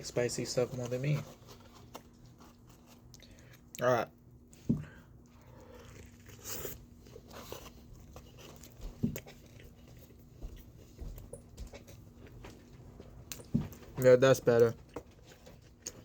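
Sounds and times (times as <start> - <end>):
person chewing: 5.2 - 13.9.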